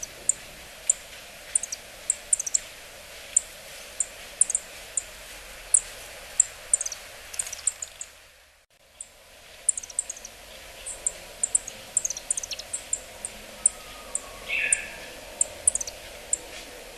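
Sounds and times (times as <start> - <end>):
bird calling high notes: 9.7 - 16.4.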